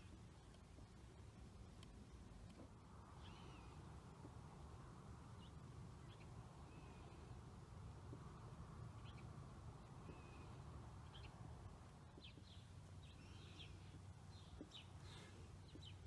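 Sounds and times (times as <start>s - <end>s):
faint bird chirps: 3.1s - 4.0s, 5.4s - 7.4s, 9.0s - 11.4s.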